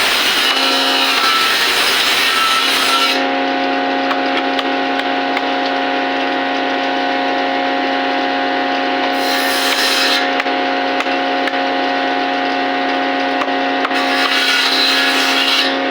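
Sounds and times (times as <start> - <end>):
power tool biting into wood: 0.0 - 3.3, 13.8 - 15.9
woodworking power tool whining: 0.0 - 15.9.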